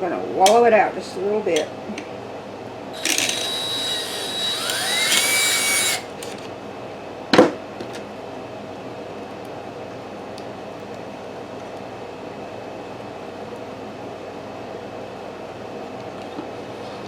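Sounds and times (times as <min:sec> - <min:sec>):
electric drill drilling wood: 0:03.0 - 0:06.4.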